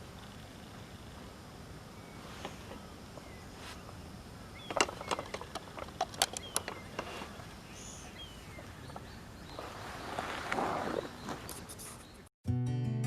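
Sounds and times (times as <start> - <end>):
steady background hiss: 0.0 - 12.3
sharp clicks and snaps: 4.7 - 7.1.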